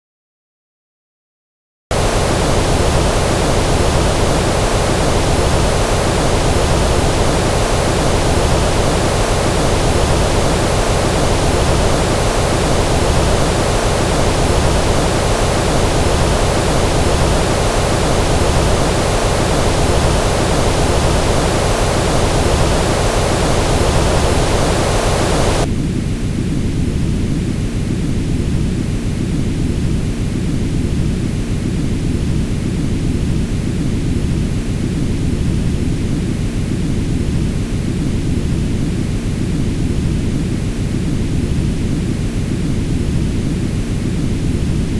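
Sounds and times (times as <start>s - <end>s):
loud broadband noise: 1.9s - 25.7s.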